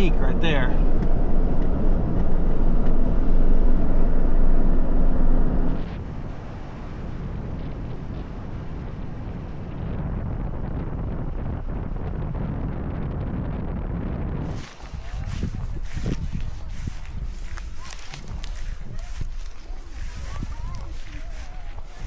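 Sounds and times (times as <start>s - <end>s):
road and engine rumble: 0.0s - 7.0s, 14.3s - 22.0s
wind: 0.0s - 22.0s.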